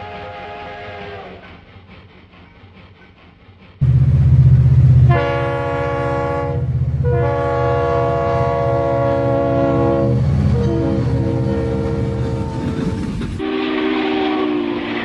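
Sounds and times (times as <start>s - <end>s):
train horn chord: 0.0s - 1.4s, 4.8s - 15.0s
low engine rumble: 3.7s - 13.4s.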